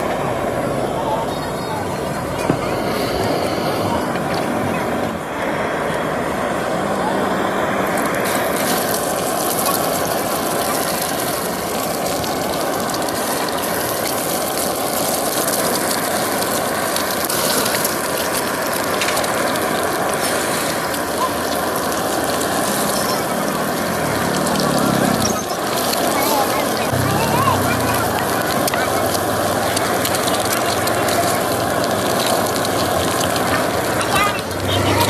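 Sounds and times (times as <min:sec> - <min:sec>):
eggs frying in hot oil: 0:07.9 - 0:35.0.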